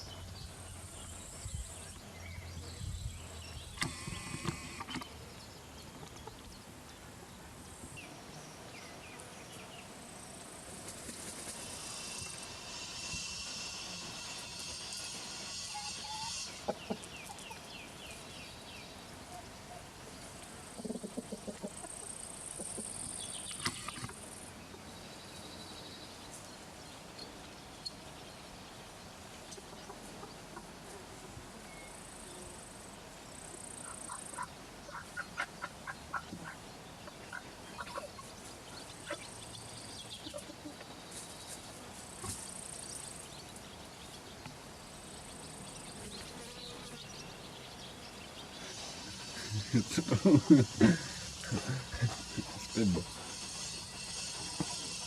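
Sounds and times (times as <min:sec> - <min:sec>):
chickens clucking: 0:10.8 - 0:18.0, 0:20.2 - 0:24.3, 0:33.5 - 0:41.3, 0:42.0 - 0:42.8, 0:48.6 - 0:55.0
high chirping: 0:11.6 - 0:17.7.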